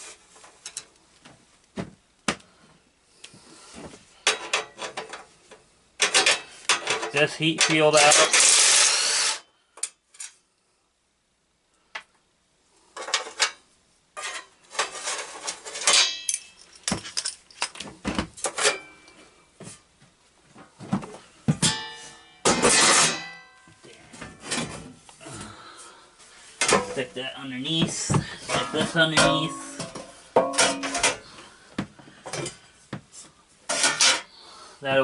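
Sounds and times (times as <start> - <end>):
sheet metal parts clanking: 4.2 - 5.3, 6.0 - 9.4, 14.2 - 17.8, 21.6 - 23.5, 27.8 - 31.3, 33.7 - 34.3.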